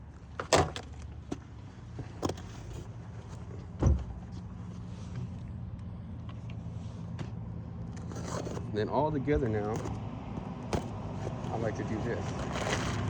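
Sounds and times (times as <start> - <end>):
brake pads knocking into bracket: 9.4 - 11.7.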